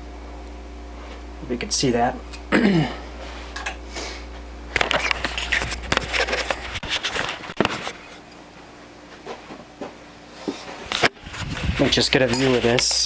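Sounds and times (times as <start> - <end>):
handling clicks and scrapes: 4.8 - 8.2, 10.8 - 13.0.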